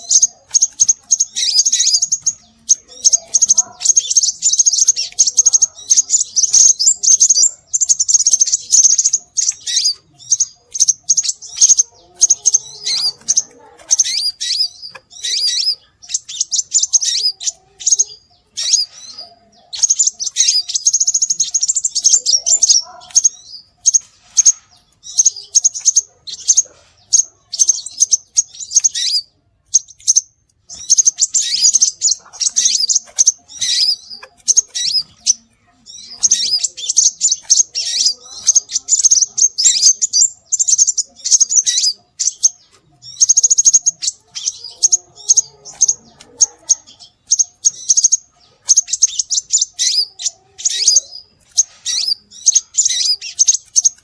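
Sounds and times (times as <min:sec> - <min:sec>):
bird chirps and twitters: 0:00.0 - 0:54.0.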